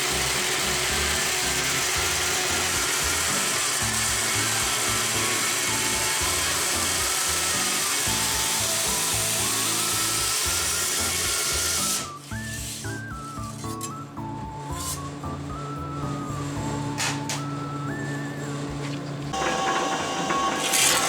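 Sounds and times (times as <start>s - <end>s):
power tool grinding: 0.0s - 14.0s, 18.8s - 21.0s
background music: 0.1s - 21.0s.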